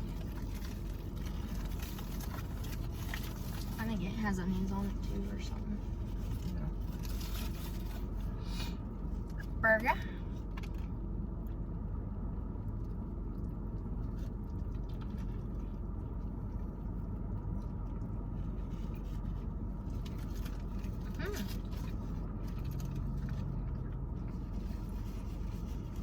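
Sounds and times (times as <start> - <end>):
food wrappers rustling: 0.0 - 3.8, 4.5 - 8.4, 18.5 - 23.5
car engine rumble in cabin: 0.0 - 26.0.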